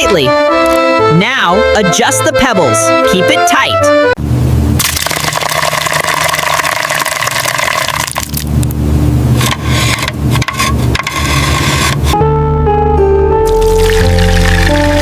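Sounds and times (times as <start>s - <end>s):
pebbles scraping and rattling: 9.4s - 11.9s.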